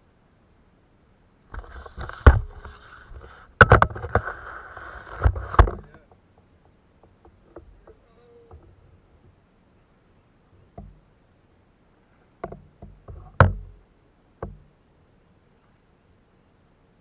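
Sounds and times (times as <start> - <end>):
sharp thumps on plastic kayak: 10.7 - 11.0, 12.4 - 13.8, 14.4 - 14.7.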